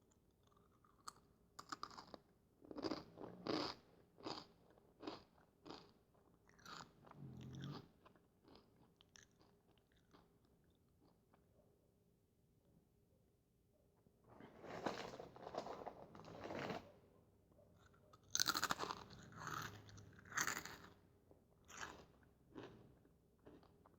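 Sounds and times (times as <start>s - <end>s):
corn chips crunching: 18.3s - 21.0s.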